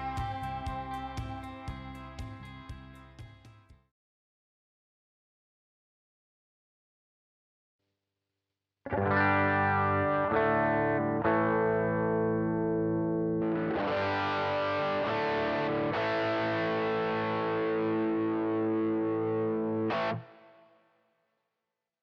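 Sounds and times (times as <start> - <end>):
distorted electric guitar chords: 0.0 - 2.9, 8.9 - 20.6.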